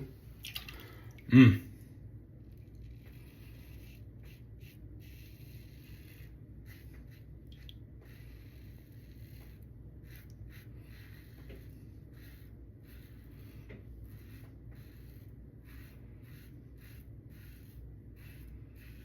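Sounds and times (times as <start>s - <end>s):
person humming: 1.3s - 1.7s
razor scraping stubble: 2.4s - 19.0s.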